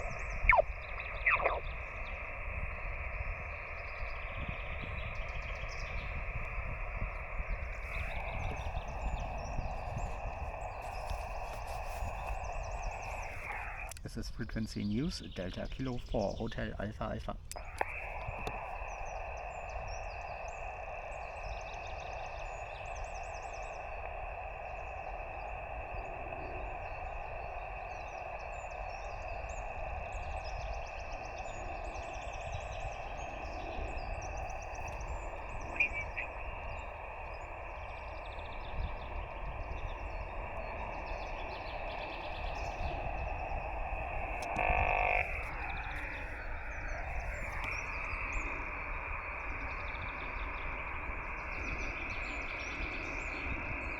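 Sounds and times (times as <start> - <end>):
radio signal burst: 0.0 - 2.7, 7.5 - 20.3, 31.6 - 48.7
shortwave receiver hiss: 0.0 - 53.9
small birds chirping: 0.0 - 53.9.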